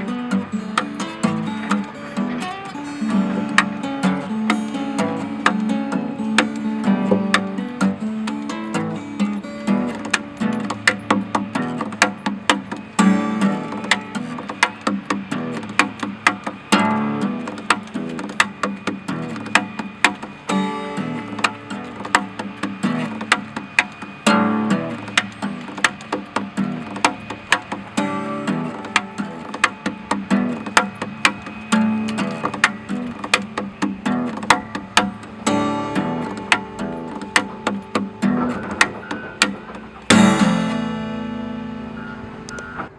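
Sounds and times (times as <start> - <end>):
acoustic guitar strumming: 0.0 - 42.9.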